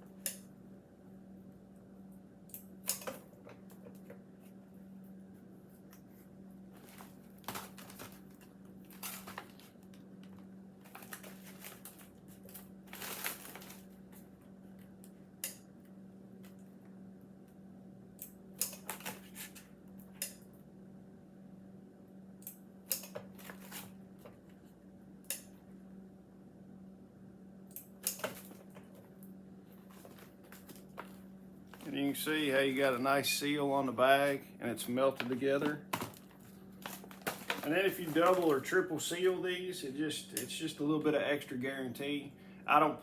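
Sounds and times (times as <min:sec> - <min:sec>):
steady low hum: 0:00.0 - 0:43.0
plastic bags crinkling: 0:06.7 - 0:09.9, 0:10.8 - 0:14.0, 0:29.8 - 0:32.9, 0:34.8 - 0:39.0.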